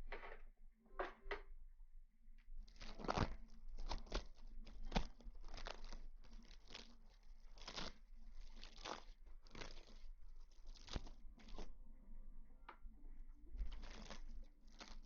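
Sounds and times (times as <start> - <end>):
crinkly rustling: 2.5 - 11.9, 13.4 - 15.0.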